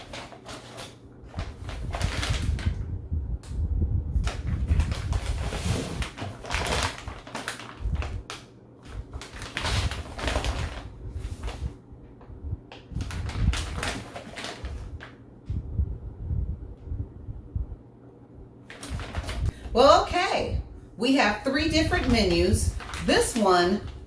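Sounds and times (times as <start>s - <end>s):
plastic packaging crinkling: 0.0s - 2.8s, 4.2s - 11.7s, 12.7s - 15.2s, 18.7s - 19.7s, 21.8s - 23.9s.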